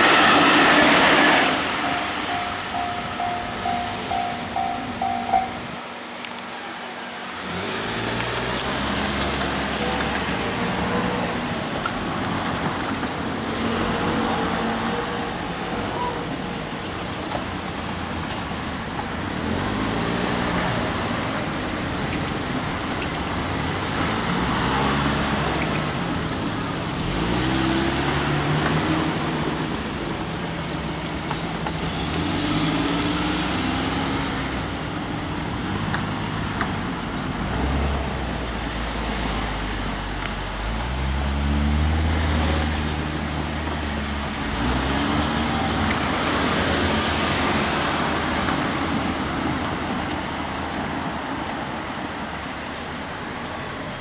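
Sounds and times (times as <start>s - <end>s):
vehicles accelerating: 0.0s - 54.0s.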